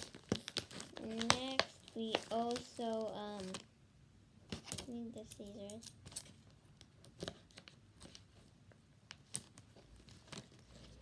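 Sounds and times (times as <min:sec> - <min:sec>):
plastic packaging crinkling: 0:00.0 - 0:03.6.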